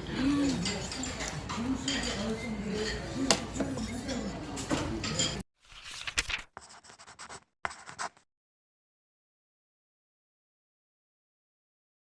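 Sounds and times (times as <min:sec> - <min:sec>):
tableware clink: 0:00.4 - 0:05.4
scratching and rubbing noises: 0:05.6 - 0:08.2.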